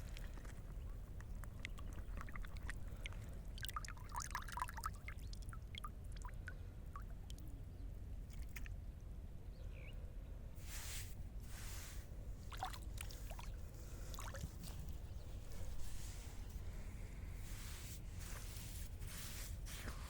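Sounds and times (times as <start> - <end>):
small clicks and plops: 0.0 - 7.5, 8.3 - 8.8
water trickling and dripping: 0.0 - 7.5
low steady rumble: 0.0 - 20.0.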